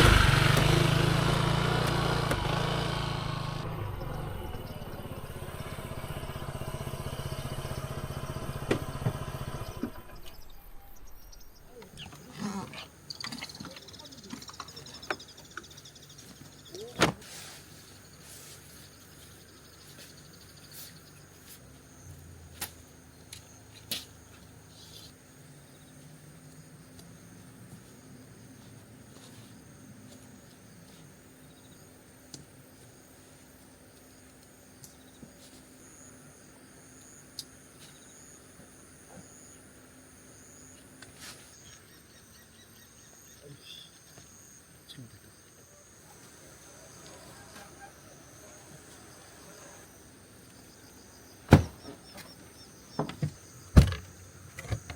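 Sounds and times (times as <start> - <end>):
insects chirping: 3.6 - 17.0, 17.8 - 54.9
crickets trilling: 9.2 - 17.0, 24.7 - 54.9.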